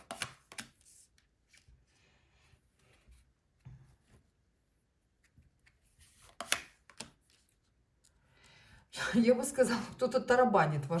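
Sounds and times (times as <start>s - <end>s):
cards rustling and clicking: 0.0s - 1.9s, 5.5s - 8.1s.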